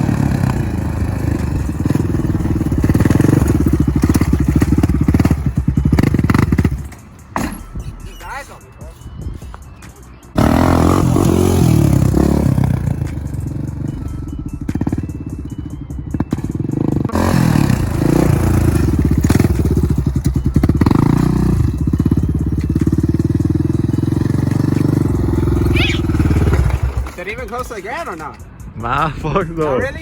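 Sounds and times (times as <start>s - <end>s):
quad engine revving: 0.0s - 6.8s, 10.4s - 15.3s, 16.2s - 27.2s.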